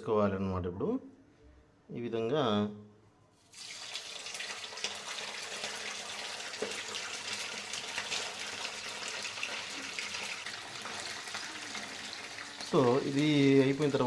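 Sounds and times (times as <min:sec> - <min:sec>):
chicken sizzling in hot oil: 0:03.5 - 0:14.0.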